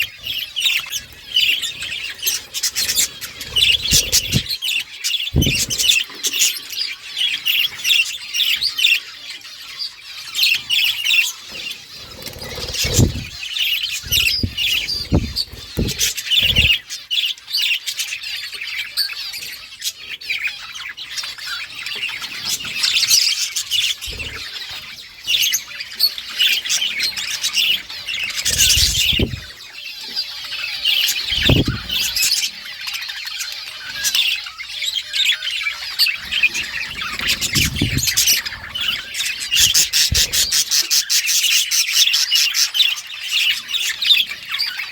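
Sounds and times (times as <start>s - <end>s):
budgerigars chirping and chattering: 0.0s - 44.9s
low thuds: 3.6s - 4.5s, 5.4s - 5.9s, 12.4s - 13.4s, 14.0s - 16.7s.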